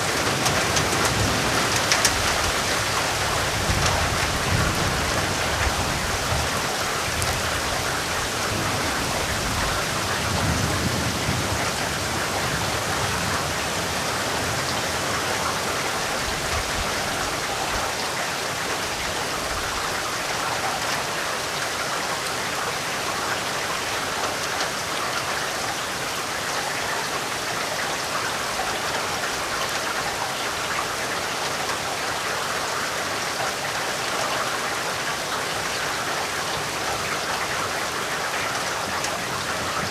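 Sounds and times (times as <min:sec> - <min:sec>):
low rumble of thunder: 0:00.0 - 0:15.2
heavy rain falling: 0:00.0 - 0:39.9.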